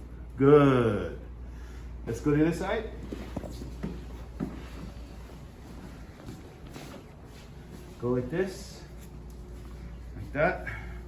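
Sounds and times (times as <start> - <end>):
low steady hum: 0.0 - 11.0
rustling on padded table: 2.9 - 8.2.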